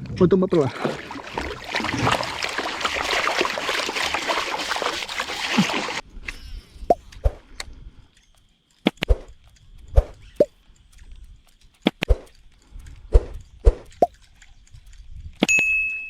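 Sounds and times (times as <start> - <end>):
water splashing and trickling: 0.4 - 6.1
small water plops: 0.6 - 6.0.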